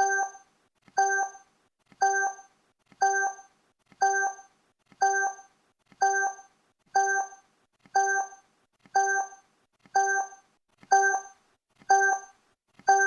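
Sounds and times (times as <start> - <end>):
countdown timer beeps: 0.0 - 0.4, 1.0 - 1.4, 2.0 - 3.4, 4.0 - 4.4, 5.0 - 5.4, 6.0 - 7.4, 8.0 - 8.4, 9.0 - 9.4, 10.0 - 11.3, 11.9 - 12.3.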